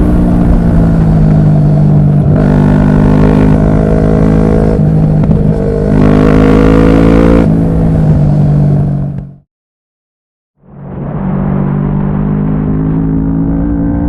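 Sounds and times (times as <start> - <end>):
motorcycle engine running: 0.0 - 9.4.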